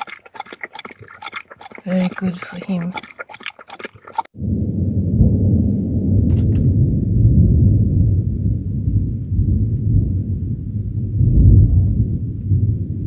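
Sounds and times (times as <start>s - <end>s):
loud thunder rumbling: 4.4s - 13.0s
sharp thunder cracks: 4.4s - 13.0s.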